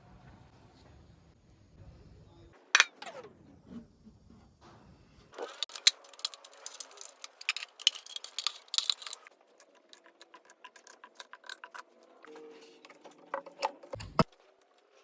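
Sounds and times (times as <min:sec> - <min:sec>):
metal tools clinking: 0:02.8 - 0:03.1, 0:05.4 - 0:09.3.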